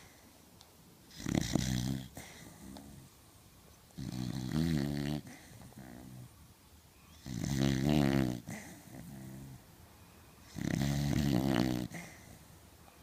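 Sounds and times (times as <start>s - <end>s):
dog snoring: 1.1s - 3.1s, 4.0s - 6.3s, 7.1s - 9.6s, 10.4s - 12.5s
dog breathing softly: 1.5s - 3.1s.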